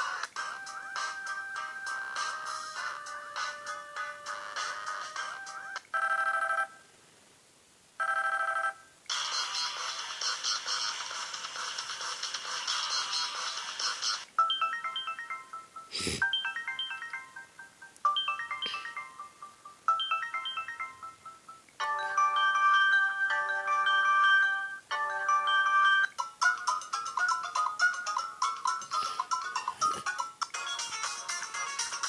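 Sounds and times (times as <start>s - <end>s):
ringtone tune of held chords: 0.0s - 6.8s, 8.0s - 32.0s
phone ringtone chime: 5.3s - 6.8s, 8.0s - 8.8s, 14.4s - 26.2s.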